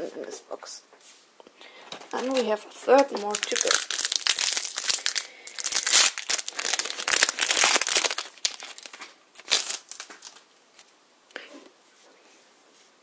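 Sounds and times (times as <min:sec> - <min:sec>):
wrapper crinkling and tearing: 0:01.8 - 0:10.9.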